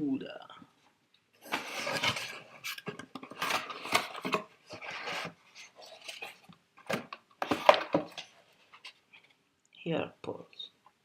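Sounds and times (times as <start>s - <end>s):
packaging rustling: 1.4s - 9.0s.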